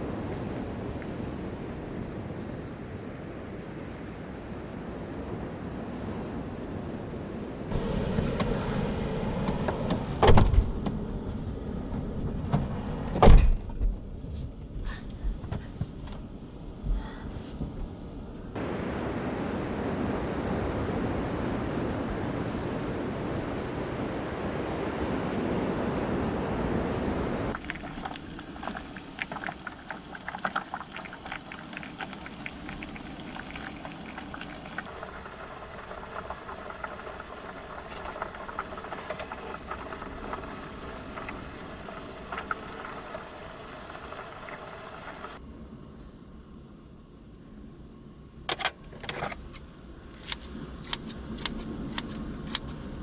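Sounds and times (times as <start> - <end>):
sea waves rushing: 7.7 - 13.1, 18.6 - 45.4
faint steady hiss: 7.7 - 25.1, 25.9 - 48.5.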